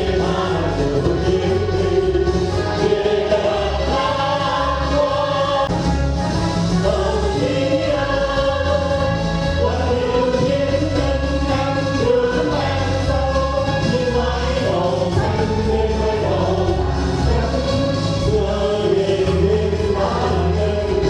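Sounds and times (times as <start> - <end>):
backing track with bass line: 0.0 - 21.0
group singing long notes: 0.0 - 21.0.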